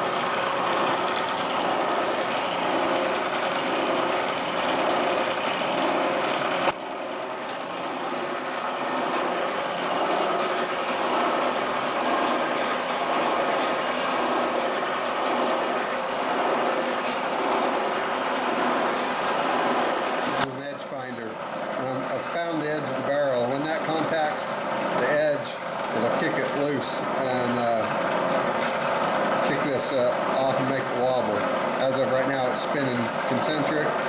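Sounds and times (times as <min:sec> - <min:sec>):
milling machine running: 0:00.0 - 0:34.0.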